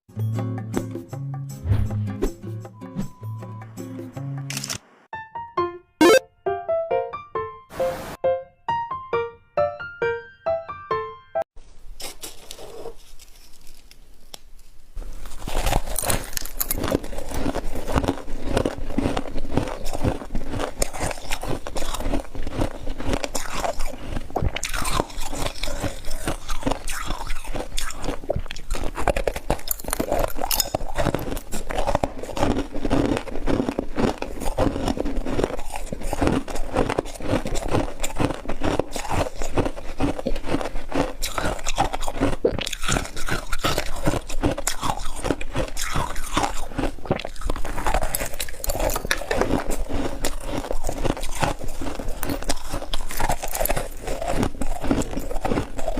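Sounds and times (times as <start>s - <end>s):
crunching frost being chewed: 12.0s - 55.9s.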